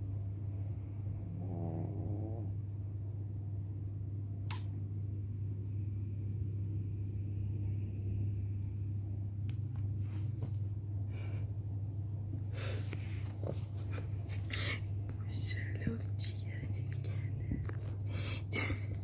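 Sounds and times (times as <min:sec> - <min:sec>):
dog snoring: 0:01.2 - 0:02.6.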